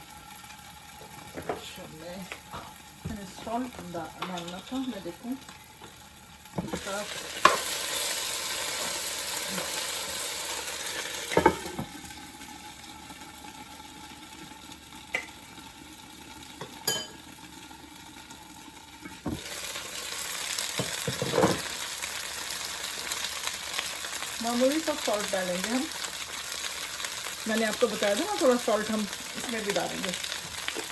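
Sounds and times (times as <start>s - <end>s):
stir fry sizzling in a pan: 0.0s - 30.9s.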